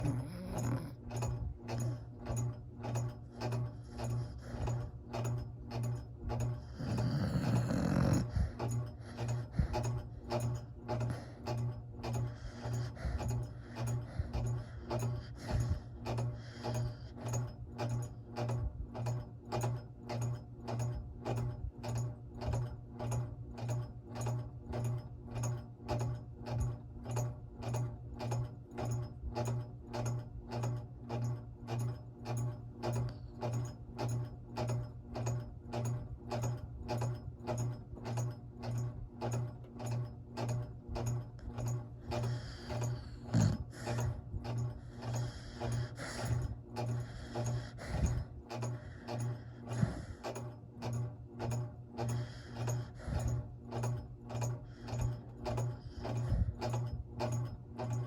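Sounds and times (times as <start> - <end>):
person snoring: 0.0 - 1.0, 6.7 - 9.8, 42.3 - 44.2, 49.7 - 50.2.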